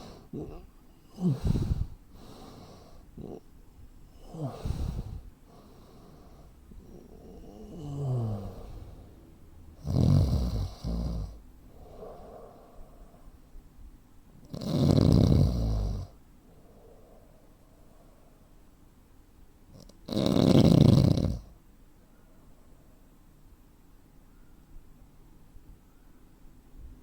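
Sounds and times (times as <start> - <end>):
man snoring heavily: 0.0 - 3.4, 4.2 - 5.2, 5.8 - 9.0, 9.8 - 12.8, 14.5 - 16.1, 19.8 - 21.5
soft breaths: 0.0 - 14.5, 15.8 - 19.0, 21.4 - 23.3.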